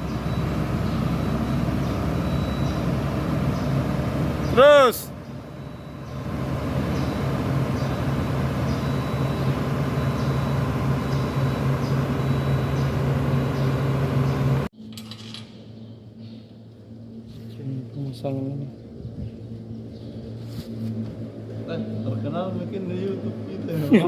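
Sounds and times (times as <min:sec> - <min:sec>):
bulldozer diesel engine running: 0:00.0 - 0:14.7
faint high beeping: 0:04.6 - 0:06.2, 0:07.0 - 0:14.0.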